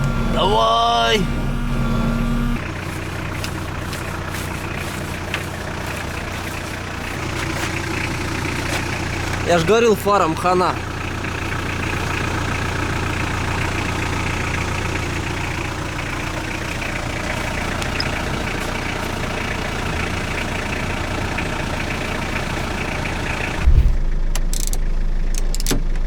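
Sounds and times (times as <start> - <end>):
truck engine idling: 0.0 - 26.0
sudden thump: 23.6 - 24.1.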